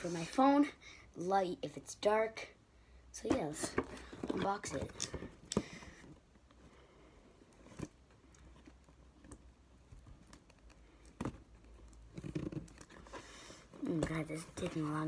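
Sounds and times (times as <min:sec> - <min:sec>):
scratches and ticks of cardboard: 0:07.6 - 0:15.0.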